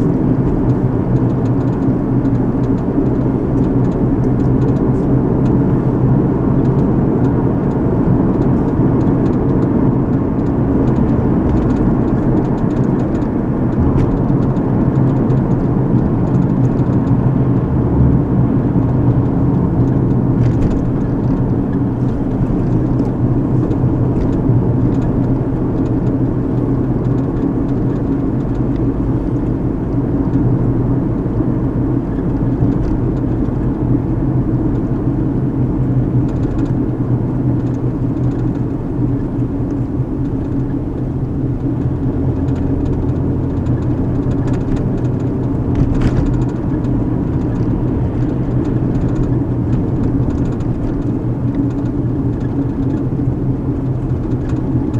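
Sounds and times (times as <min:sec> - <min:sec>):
car cabin road drone: 0:00.0 - 0:54.9.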